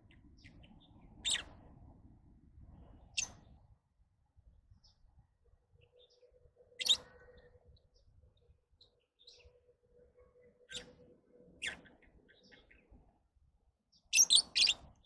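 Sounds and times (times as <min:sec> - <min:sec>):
lovebirds chirping: 0:14.0 - 0:14.8.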